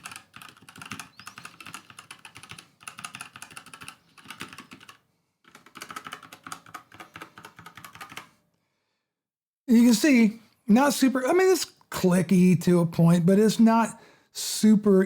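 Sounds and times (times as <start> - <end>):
mechanical keyboard typing: 0.0 - 8.3.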